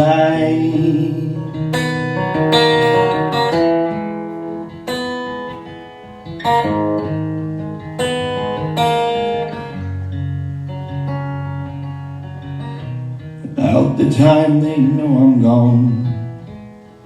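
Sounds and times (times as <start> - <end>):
person singing: 0.0 - 2.0, 13.4 - 16.5
acoustic guitar strumming: 0.0 - 17.0.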